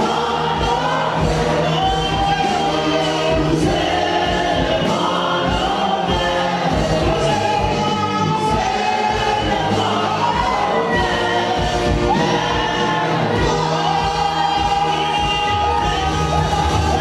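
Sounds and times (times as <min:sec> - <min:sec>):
choir singing with band: 0:00.0 - 0:17.0.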